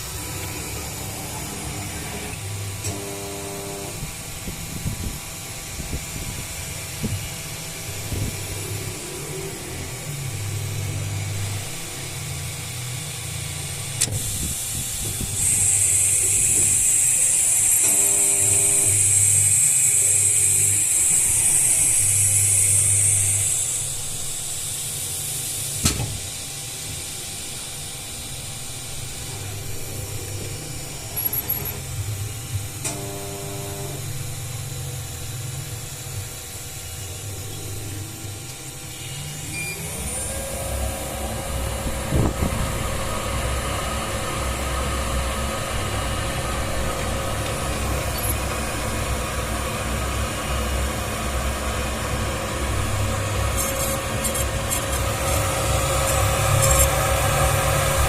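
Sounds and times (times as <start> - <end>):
mechanical noise: 0.0 - 58.0
motor whine and hum: 0.0 - 58.0.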